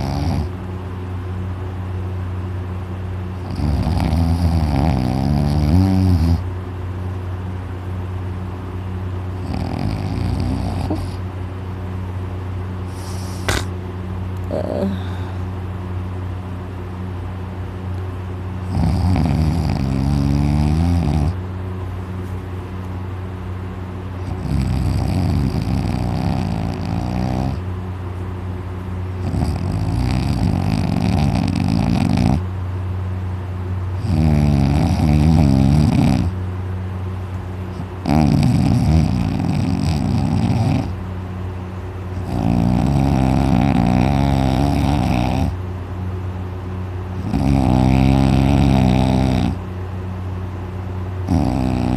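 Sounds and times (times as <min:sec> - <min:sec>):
man snoring loudly: 0:00.0 - 0:00.5, 0:03.4 - 0:06.4, 0:09.4 - 0:11.2, 0:18.7 - 0:21.4, 0:24.2 - 0:27.6, 0:29.2 - 0:32.4, 0:34.0 - 0:36.3, 0:38.0 - 0:40.9, 0:42.2 - 0:45.6, 0:47.2 - 0:49.6, 0:51.3 - 0:51.9
steady low hum: 0:00.0 - 0:51.9.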